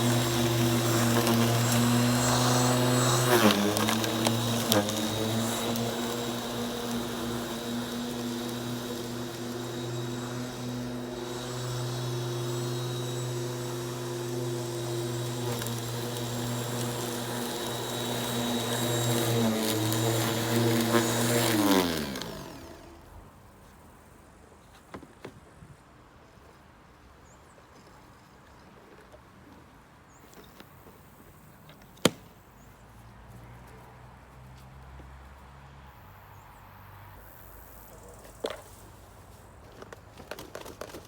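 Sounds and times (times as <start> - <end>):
electric lawn mower motor humming: 0.0 - 23.3.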